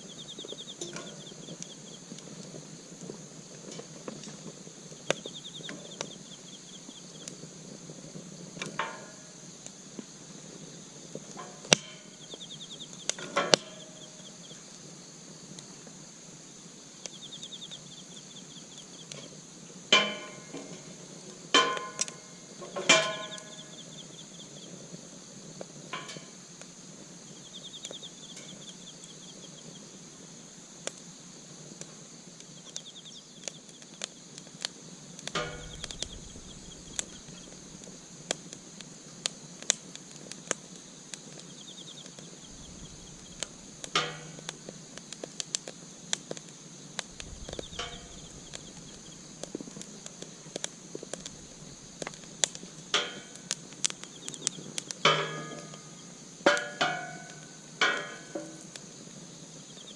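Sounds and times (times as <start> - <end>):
high insect hum: 0.0 - 59.9
insect chirp trains: 0.0 - 59.9
sharp knocks: 35.4 - 37.9, 47.1 - 49.5.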